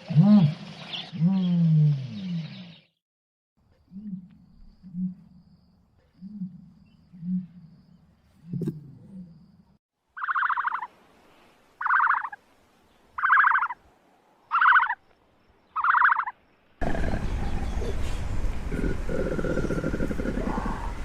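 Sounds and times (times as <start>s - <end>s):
noisy outdoor background: 0.0s - 3.0s, 3.6s - 21.0s
animal buzzy calls: 10.2s - 10.9s, 11.8s - 12.4s, 13.2s - 13.8s, 14.5s - 15.0s, 15.8s - 18.1s
low rumble: 16.8s - 21.0s.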